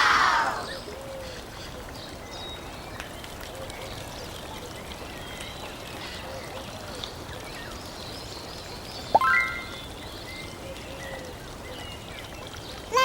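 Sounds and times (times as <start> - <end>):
cartoon swoop with ringing tone: 9.2 - 9.8.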